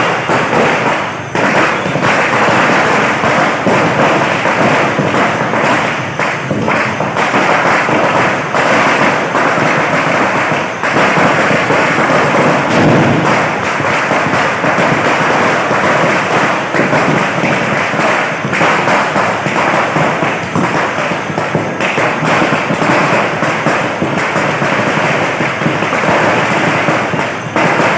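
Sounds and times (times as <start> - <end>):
firecrackers popping and banging: 0.0 - 27.9.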